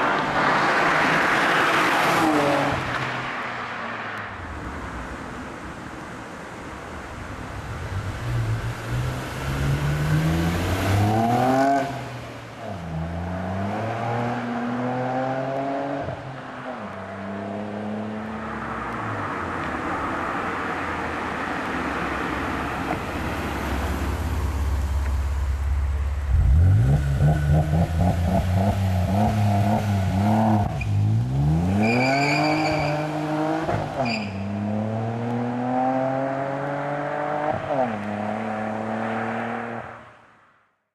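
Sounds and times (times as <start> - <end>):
car engine accelerating hard: 7.7 - 12.2, 22.8 - 39.9.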